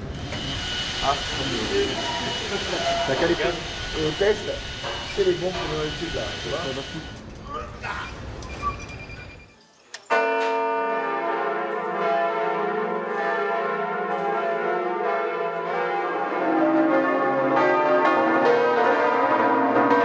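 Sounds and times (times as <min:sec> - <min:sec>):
deeper bells: 0:00.0 - 0:07.2, 0:10.1 - 0:20.0
cathedral bells ringing: 0:01.0 - 0:07.1, 0:10.1 - 0:20.0.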